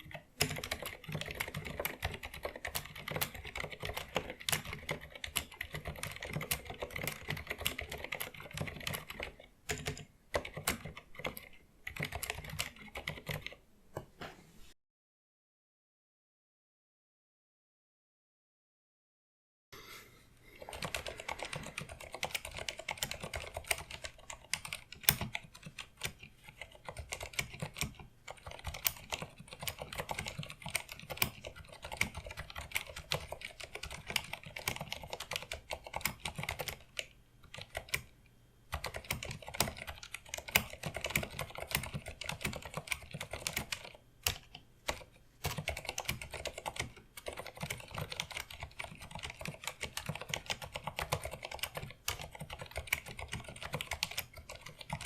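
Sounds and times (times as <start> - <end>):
fast typing on mechanical keyboard: 0.0 - 13.6, 20.6 - 38.1, 38.7 - 55.0.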